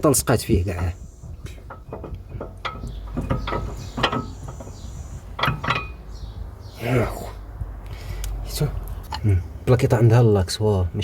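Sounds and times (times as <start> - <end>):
sharp metal knocks: 1.3 - 6.2.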